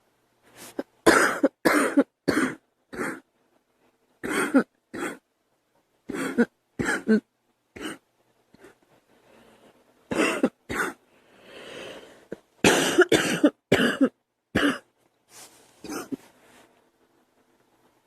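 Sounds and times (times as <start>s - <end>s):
girl coughing: 1.0s - 3.2s, 4.2s - 5.2s, 6.1s - 8.0s, 10.1s - 11.0s, 12.6s - 14.9s, 15.8s - 16.2s.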